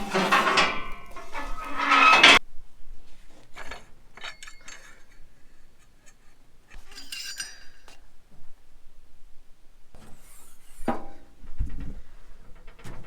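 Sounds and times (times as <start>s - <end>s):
light metallic clinks and rattles: 3.6s - 5.4s, 6.0s - 8.0s.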